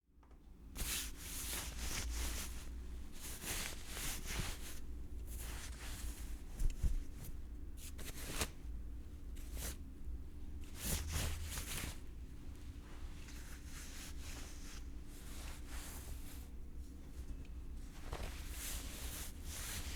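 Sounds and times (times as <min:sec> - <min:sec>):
fabric swishing and rustling: 0:00.8 - 0:08.6, 0:10.6 - 0:16.6, 0:17.8 - 0:19.9.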